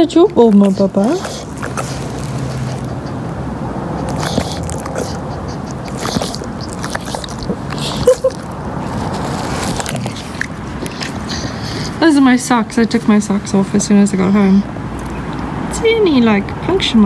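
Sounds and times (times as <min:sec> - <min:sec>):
dog chewing on ball: 0:00.0 - 0:13.3.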